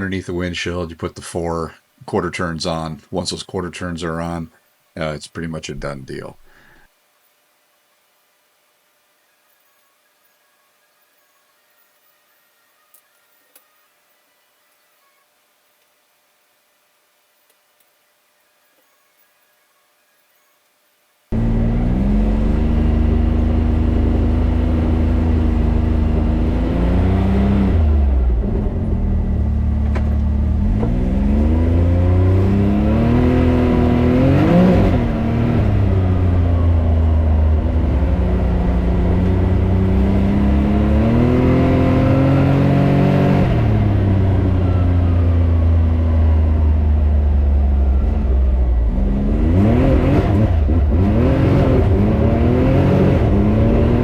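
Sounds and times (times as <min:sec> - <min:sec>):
off-road vehicle engine revving: 0:21.3 - 0:54.0.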